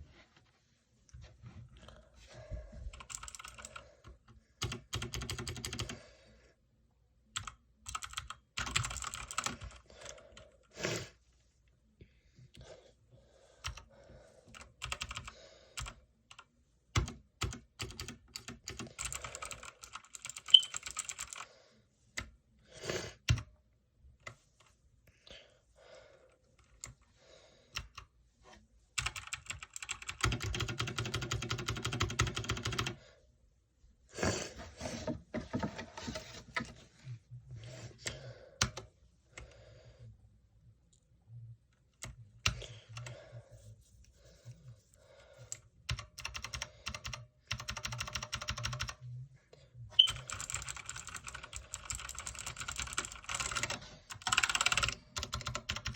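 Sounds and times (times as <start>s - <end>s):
mechanical keyboard typing: 3.0s - 3.8s, 4.6s - 6.0s, 7.4s - 10.2s, 14.5s - 16.4s, 17.0s - 21.4s, 29.0s - 33.0s, 45.5s - 49.0s, 50.0s - 55.9s.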